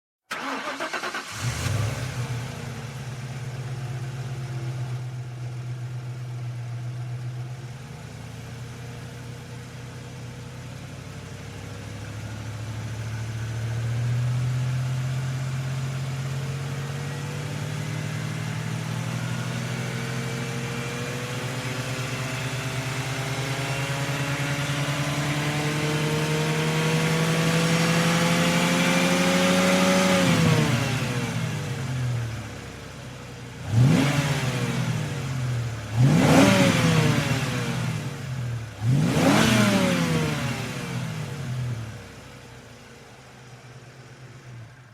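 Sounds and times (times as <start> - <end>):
car engine revving: 0.3 - 5.5, 13.3 - 32.4, 33.6 - 42.2.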